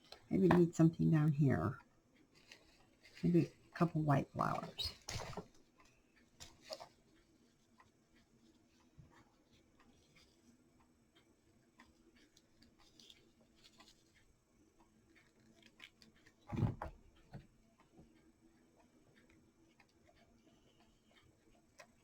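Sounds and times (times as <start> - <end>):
small clicks and light taps: 4.8 - 22.0.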